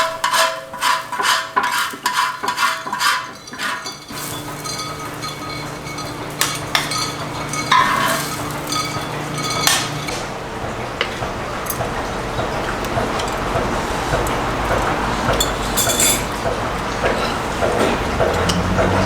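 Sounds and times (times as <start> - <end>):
metal utensil scraping pan: 0.0 - 10.2.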